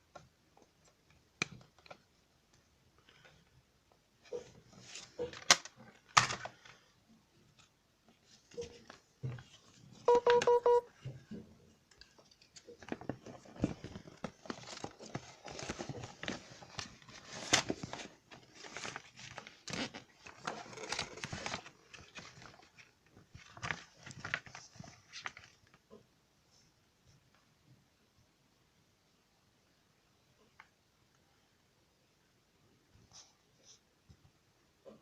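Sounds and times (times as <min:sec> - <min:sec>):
plastic wrap crinkling and tearing: 0:12.3 - 0:25.8.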